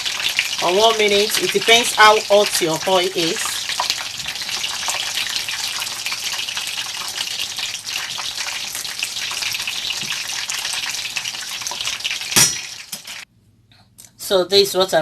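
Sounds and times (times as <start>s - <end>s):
chicken frying in hot oil: 0.0s - 13.3s
sharp clack: 12.4s - 13.2s.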